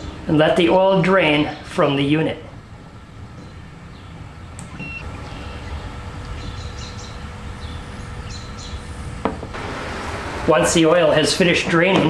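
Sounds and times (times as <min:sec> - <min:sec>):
birds chirping faintly: 0:03.2 - 0:09.2.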